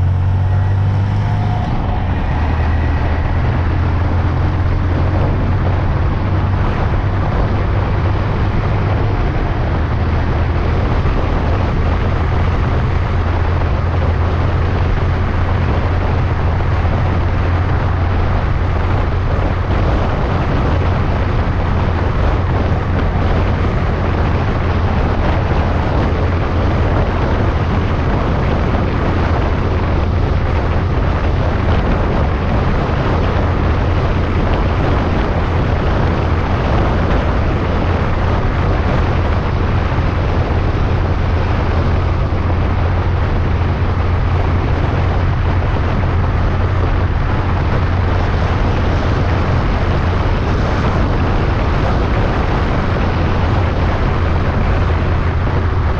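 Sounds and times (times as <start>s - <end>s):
low drone: 0.0s - 28.8s
vehicle road noise: 0.0s - 55.9s
wind rush: 0.0s - 55.9s.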